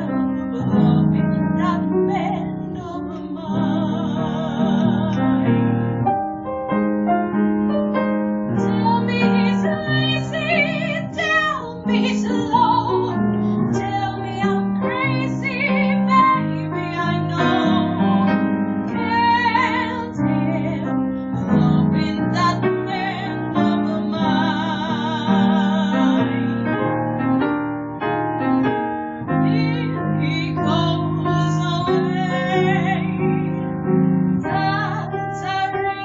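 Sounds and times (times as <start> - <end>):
woman singing operatically: 0.0 - 5.4, 8.6 - 18.2, 18.9 - 26.5, 29.4 - 33.2, 34.4 - 36.0
piano: 0.0 - 36.0.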